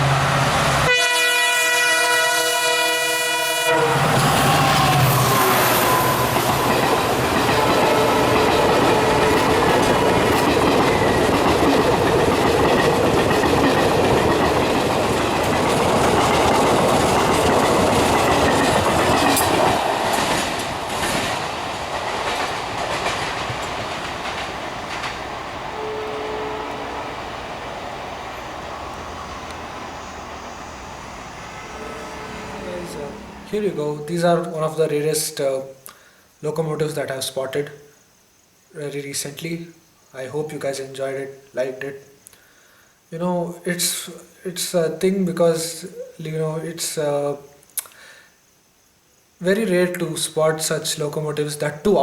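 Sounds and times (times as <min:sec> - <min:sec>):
locomotive horn: 0:00.0 - 0:06.8, 0:07.4 - 0:09.9, 0:25.7 - 0:27.6, 0:31.2 - 0:33.7
train passing: 0:00.0 - 0:35.4
wheels clacking over rail joints: 0:03.9 - 0:30.0.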